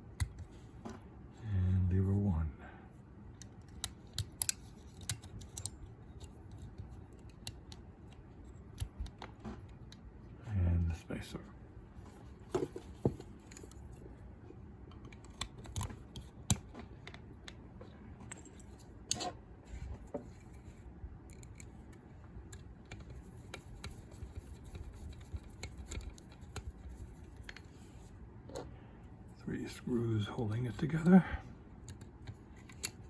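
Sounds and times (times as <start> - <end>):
small metal lock parts clicking: 3.3 - 10.0, 14.9 - 17.6, 21.3 - 27.7, 31.8 - 33.0.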